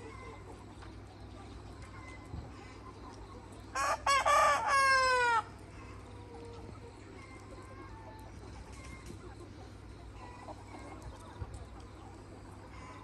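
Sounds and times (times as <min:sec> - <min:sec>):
hens clucking faintly: 0:00.0 - 0:13.0
rooster crowing: 0:03.8 - 0:05.5.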